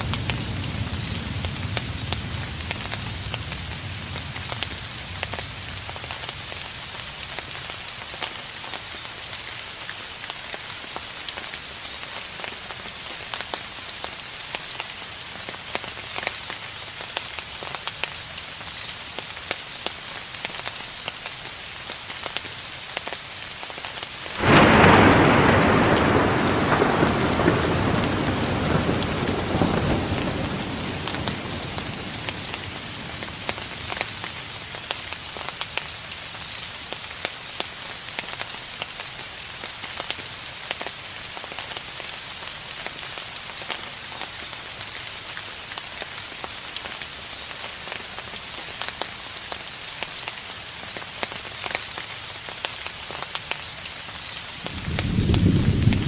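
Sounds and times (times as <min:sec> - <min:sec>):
steady rain falling: 0:00.0 - 0:56.0
distant thunder rumble: 0:24.4 - 0:34.3, 0:54.6 - 0:56.0.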